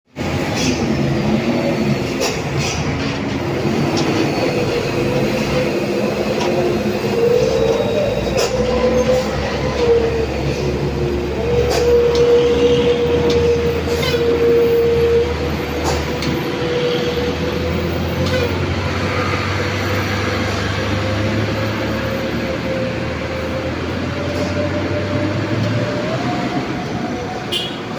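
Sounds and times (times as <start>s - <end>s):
heavy vehicle engine labouring: 0.1s - 27.9s.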